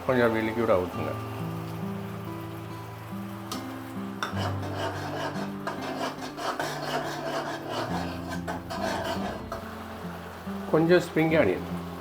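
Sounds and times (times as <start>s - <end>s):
background music: 0.0s - 12.0s
spoon scraping in a pan: 3.5s - 9.8s.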